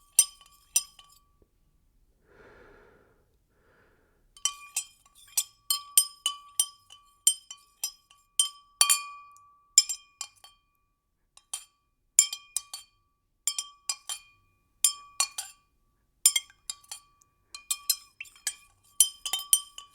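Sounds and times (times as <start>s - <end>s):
stirrer clinking against glass: 16.3s - 19.9s.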